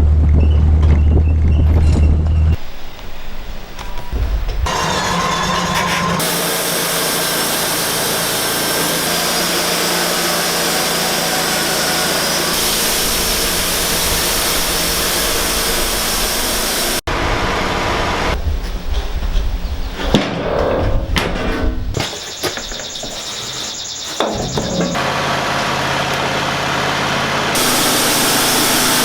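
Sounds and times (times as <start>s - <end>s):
sawmill cutting timber: 4.6s - 18.4s, 23.0s - 29.0s.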